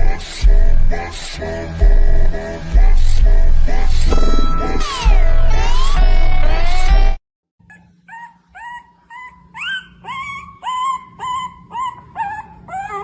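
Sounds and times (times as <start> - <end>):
electronic music with pitch glides: 1.8 - 7.2
dog whining: 7.6 - 13.0.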